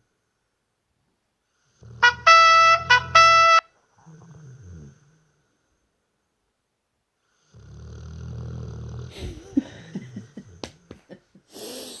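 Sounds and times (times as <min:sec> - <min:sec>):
snort and snuffles: 0:07.5 - 0:09.5, 0:11.5 - 0:12.0
person snoring: 0:11.5 - 0:12.0.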